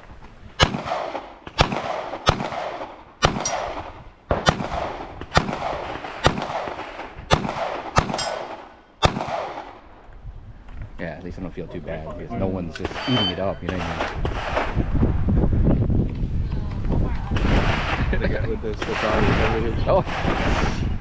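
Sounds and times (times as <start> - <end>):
handgun shots with echo: 0.6 - 9.7.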